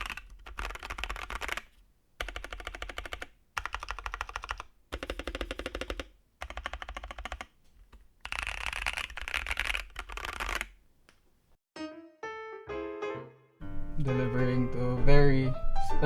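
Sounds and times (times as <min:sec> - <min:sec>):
mechanical keyboard typing: 0:00.0 - 0:11.2.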